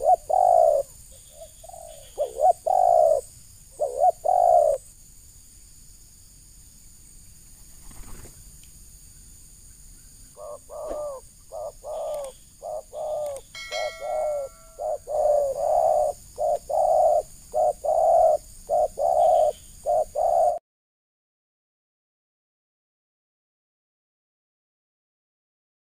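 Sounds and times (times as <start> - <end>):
dove cooing: 0.0 - 4.9, 10.3 - 20.6.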